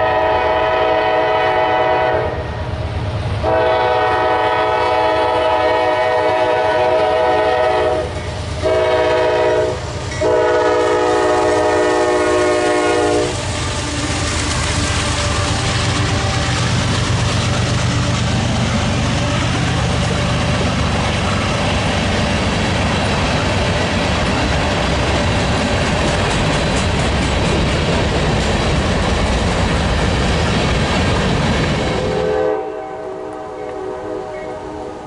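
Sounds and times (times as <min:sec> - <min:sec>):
train horn chord: 0:00.0 - 0:02.7, 0:03.4 - 0:14.3, 0:15.0 - 0:16.8, 0:31.9 - 0:35.0
train wheels clattering on rails: 0:03.2 - 0:32.4.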